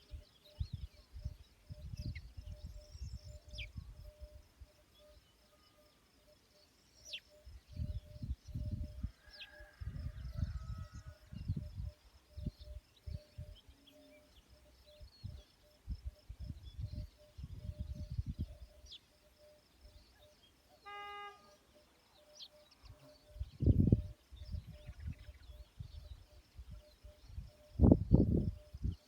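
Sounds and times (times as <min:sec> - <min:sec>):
bird chirps: 0:00.0 - 0:29.0
faint pulsing tone: 0:00.0 - 0:29.0
short horn-like tone: 0:20.8 - 0:21.7.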